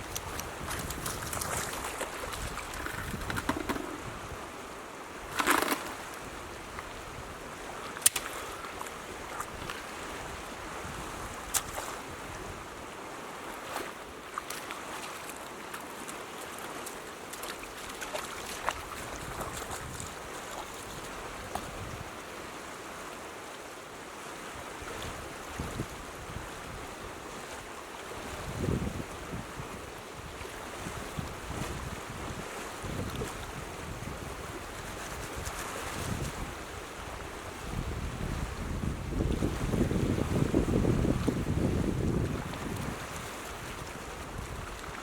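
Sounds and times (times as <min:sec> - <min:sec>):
creek current rushing: 0:00.0 - 0:24.8
sharp clicks and knocks: 0:02.8 - 0:04.0.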